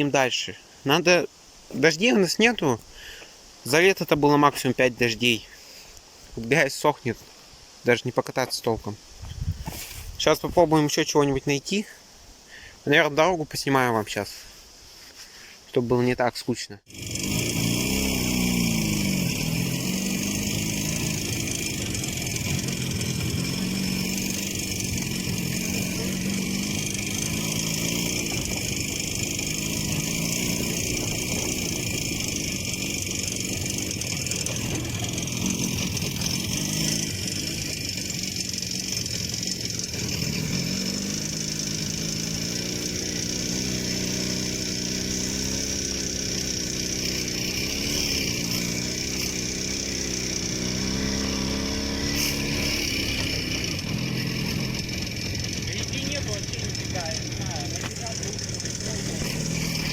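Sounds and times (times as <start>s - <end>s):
motorcycle engine revving: 16.9s - 59.9s.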